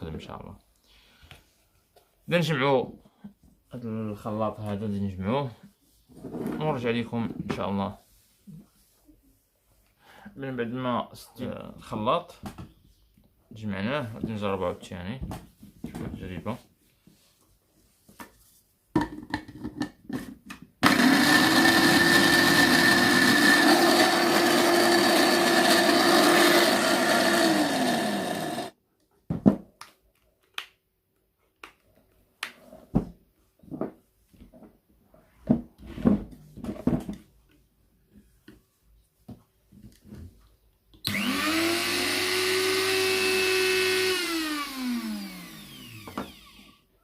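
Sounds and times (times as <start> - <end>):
blender motor running: 20.8 - 28.8, 41.1 - 46.8.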